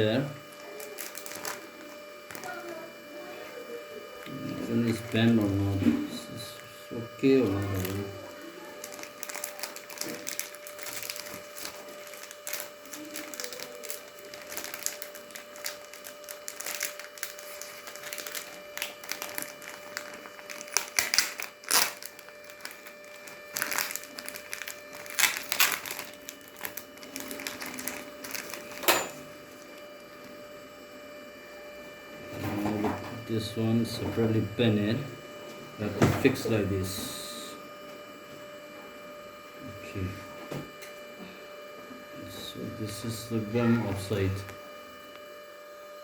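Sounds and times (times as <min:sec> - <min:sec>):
faint steady hum: 0:00.0 - 0:46.0
packaging rustling: 0:00.5 - 0:02.8, 0:07.4 - 0:30.4.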